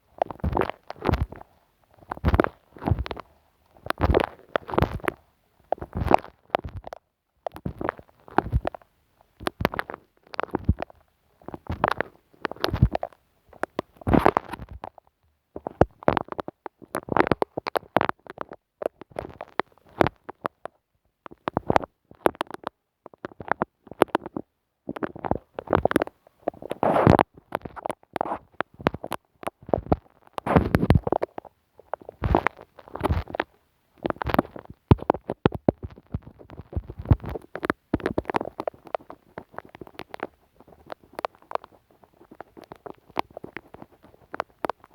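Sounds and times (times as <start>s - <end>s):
glue stick sticky crackling on microphone: 25.6s - 44.9s.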